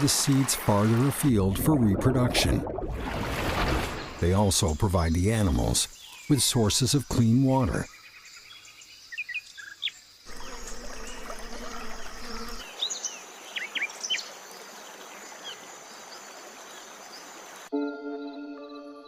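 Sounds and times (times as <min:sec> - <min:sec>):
high-pitched insect buzz: 0:10.3 - 0:12.7.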